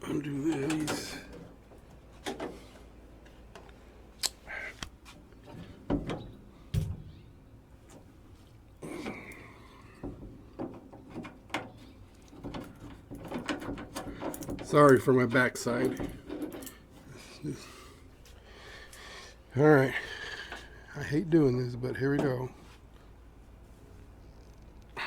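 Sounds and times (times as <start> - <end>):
dull thunks: 5.5 - 8.1
hand tools clicking and knocking: 8.8 - 17.7.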